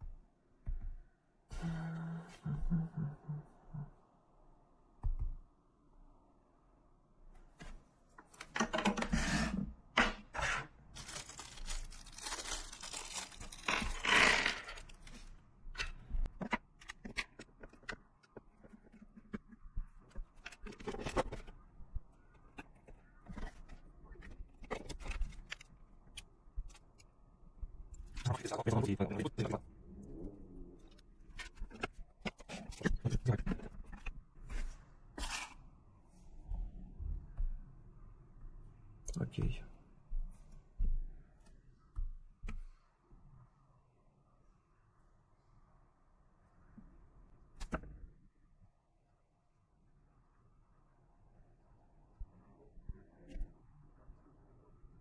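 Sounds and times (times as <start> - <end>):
scraping rustling and tearing: 10.9 - 15.3
clicks and rattles of small objects: 11.0 - 15.2.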